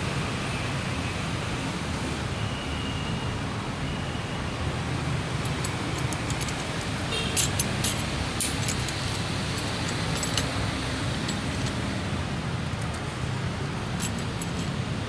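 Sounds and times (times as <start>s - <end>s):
metal fittings clicking together: 5.4s - 11.9s, 14.0s - 14.8s.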